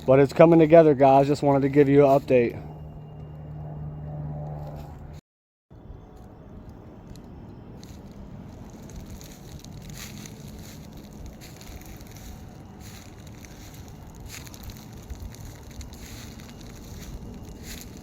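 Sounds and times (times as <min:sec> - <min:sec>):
rushing background noise: 0:06.2 - 0:18.0
faint crackles: 0:07.1 - 0:18.0.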